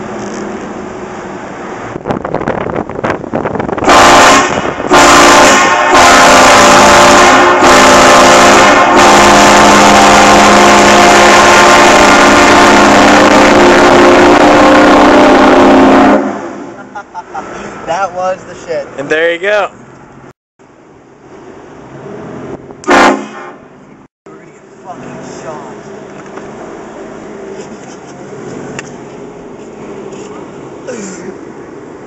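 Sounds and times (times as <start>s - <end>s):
train horn blasting a chord: 3.8s - 16.6s, 22.8s - 23.6s.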